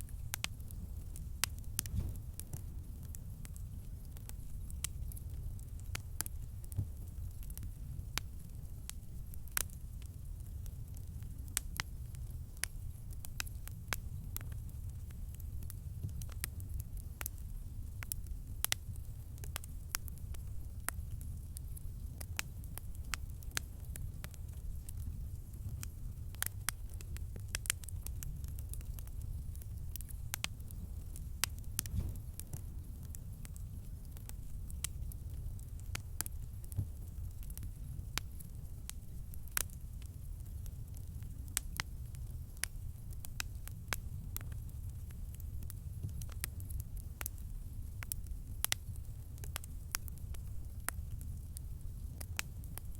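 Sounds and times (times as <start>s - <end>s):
campfire crackling and popping: 0.0s - 52.9s
low rumble of burning fire: 0.0s - 52.9s
low rumble: 1.2s - 3.7s, 30.2s - 36.5s.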